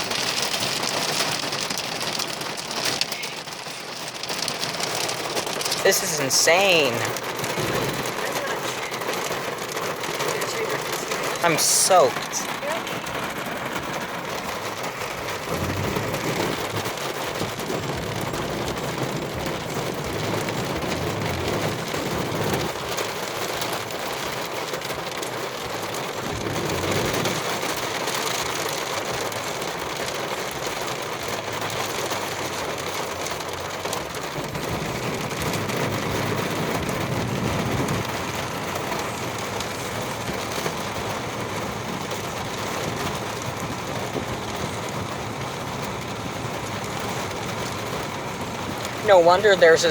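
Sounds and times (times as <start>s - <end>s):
heavy rain and hail pelting: 0.0s - 49.9s
low rumbles: 6.8s - 11.5s, 12.1s - 23.0s.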